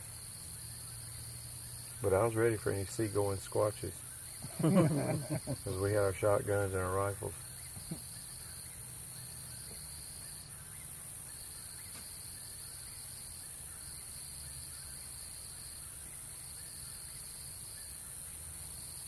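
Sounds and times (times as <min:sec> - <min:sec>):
distant birds calling: 0:00.0 - 0:13.9.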